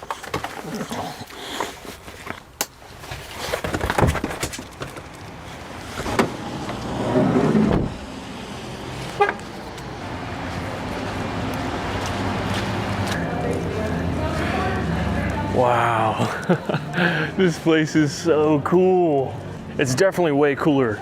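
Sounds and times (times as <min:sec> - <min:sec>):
vehicle engine running: 0:09.4 - 0:15.6.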